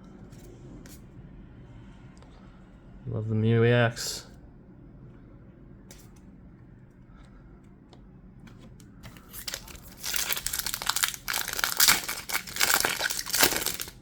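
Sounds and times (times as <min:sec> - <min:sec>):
foil wrapper crinkling: 0:09.1 - 0:14.0.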